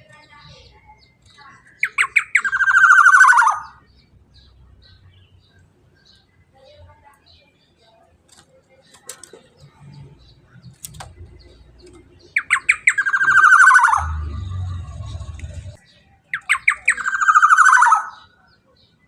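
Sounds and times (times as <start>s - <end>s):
oriole calling: 1.8s - 3.9s, 12.4s - 15.8s
low hum: 13.2s - 15.8s.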